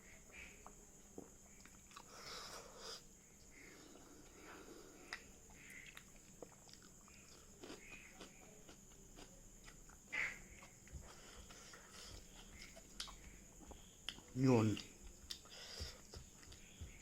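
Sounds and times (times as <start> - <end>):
chewing and mouth clicks: 0.6 - 2.3, 3.9 - 17.0.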